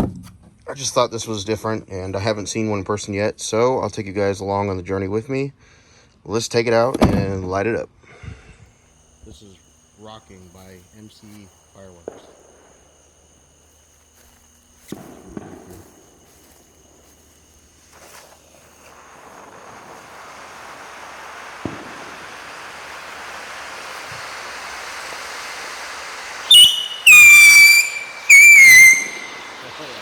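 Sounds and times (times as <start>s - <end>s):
firework fountain hissing: 8.7s - 30.0s
firework shrieking whistles: 9.2s - 30.0s.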